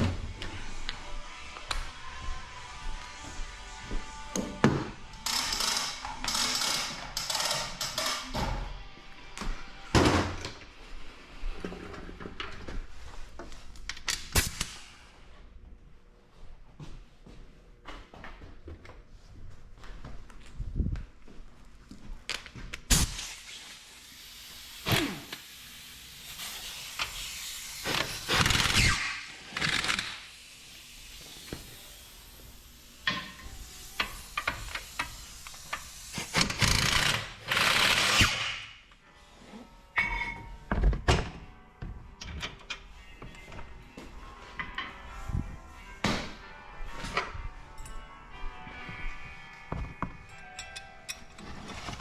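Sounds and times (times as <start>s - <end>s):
metal tool noise: 39.9s - 40.7s.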